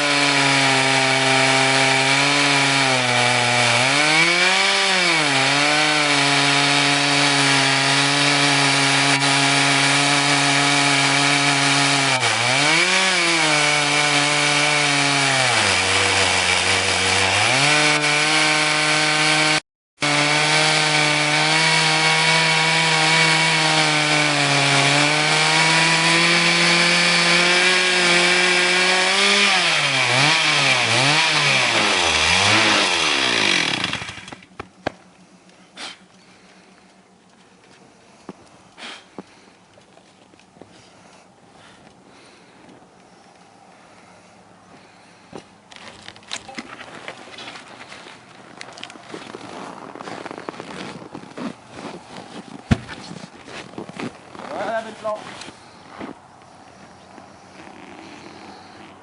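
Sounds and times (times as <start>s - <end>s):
chainsaw cutting a log: 0.0s - 35.0s, 54.5s - 55.6s.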